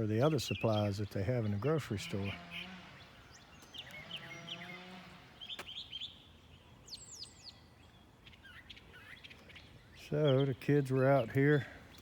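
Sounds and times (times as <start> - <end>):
songbirds chirping: 0.0 - 12.0.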